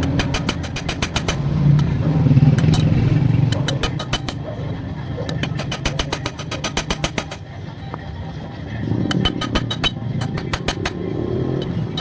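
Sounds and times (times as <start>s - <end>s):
sharp clicks and ticks: 0.0s - 4.5s, 5.3s - 8.0s, 9.1s - 12.0s
vehicle engine running: 0.0s - 6.5s.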